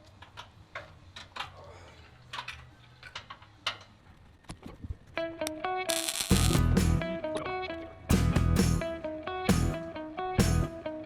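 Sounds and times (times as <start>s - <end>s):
guitar music: 5.2s - 11.0s.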